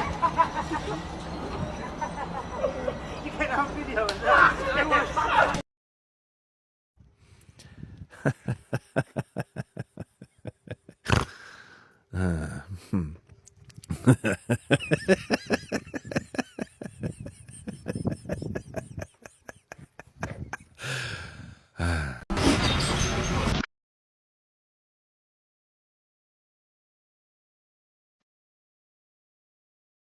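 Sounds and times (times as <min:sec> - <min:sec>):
person laughing: 0:08.1 - 0:11.6, 0:12.2 - 0:13.2, 0:13.9 - 0:22.2.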